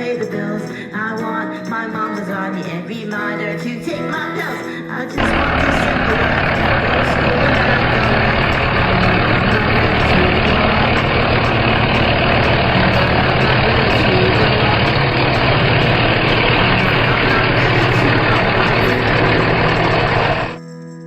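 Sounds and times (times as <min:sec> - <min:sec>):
large engine droning: 0:05.2 - 0:20.6.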